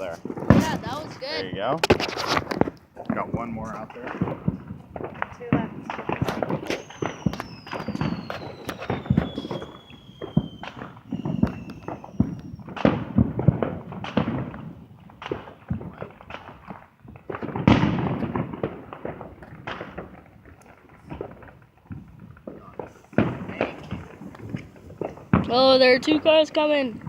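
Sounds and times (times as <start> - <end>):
fireworks crackling pops: 0.0 - 27.0
firework whistle falling in pitch: 6.6 - 12.7.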